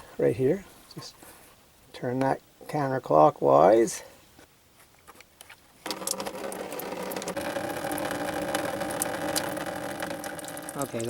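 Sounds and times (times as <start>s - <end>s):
coolant pouring into container: 5.8s - 11.0s.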